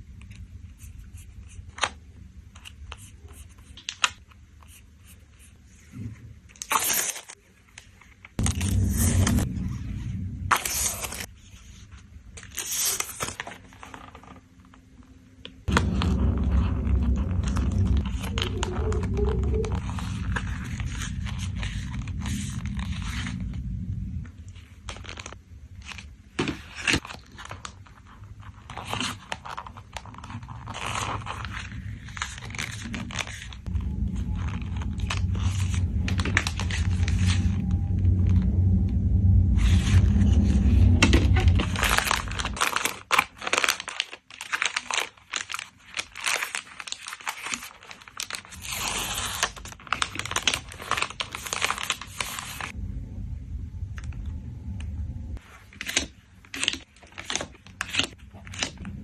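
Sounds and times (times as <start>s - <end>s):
low steady rumble: 8.4s - 12.4s, 15.6s - 26.2s, 30.2s - 43.1s, 48.6s - 55.6s, 58.2s - 59.0s
plastic wrapping crinkling: 15.6s - 52.8s, 55.4s - 59.0s.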